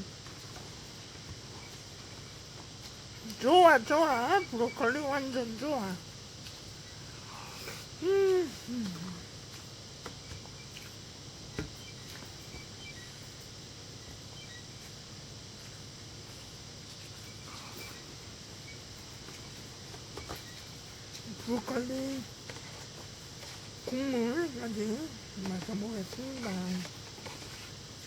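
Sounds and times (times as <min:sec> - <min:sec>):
steady low hiss: 0:00.0 - 0:28.0
person humming while eating: 0:07.6 - 0:09.3.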